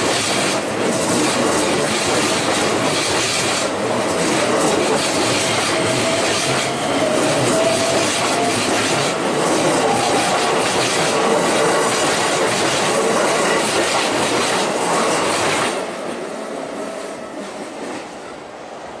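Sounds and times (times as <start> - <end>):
train wheels clattering: 0.0 - 16.2.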